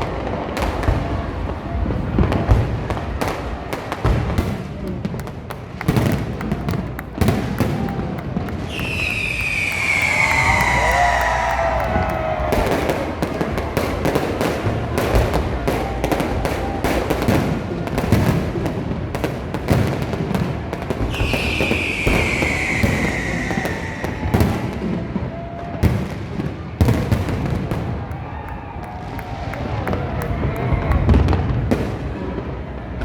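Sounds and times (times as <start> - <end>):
fireworks crackling and banging: 0.0 - 33.0
falling firework whistle: 8.7 - 17.4, 21.0 - 26.2.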